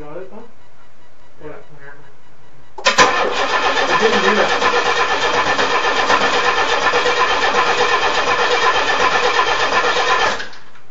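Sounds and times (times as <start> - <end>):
starter cranking engine: 2.8 - 10.6.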